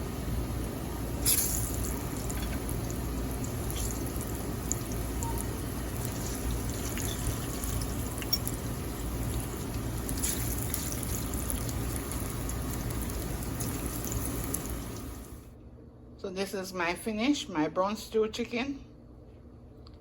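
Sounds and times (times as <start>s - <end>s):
plantain frying in hot oil: 0.0s - 15.4s.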